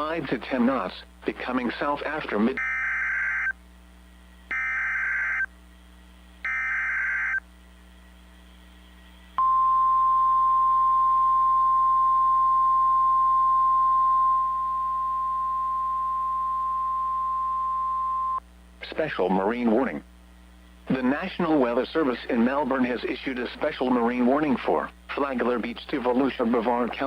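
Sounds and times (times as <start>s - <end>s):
steady warning alarm tone: 2.6s - 3.6s, 4.5s - 5.5s, 6.4s - 7.4s, 9.4s - 18.4s.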